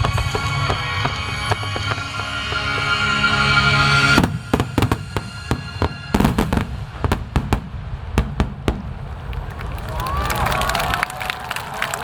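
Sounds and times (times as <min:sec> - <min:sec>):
music holding a chord: 0:00.0 - 0:07.1
fireworks bangs and crackles: 0:00.0 - 0:11.2.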